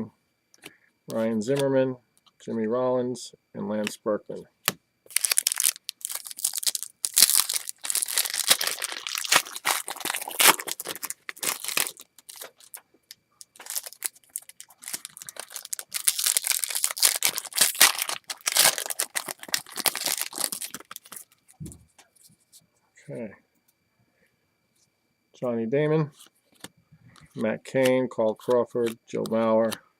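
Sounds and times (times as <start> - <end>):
card pack wrapper tearing and crinkling: 5.1 - 12.8, 13.5 - 21.3.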